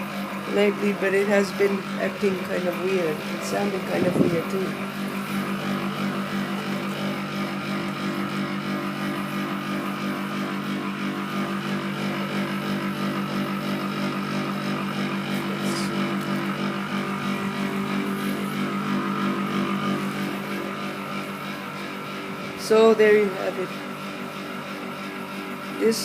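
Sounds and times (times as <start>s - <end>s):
air conditioner unit humming: 0.0s - 26.0s.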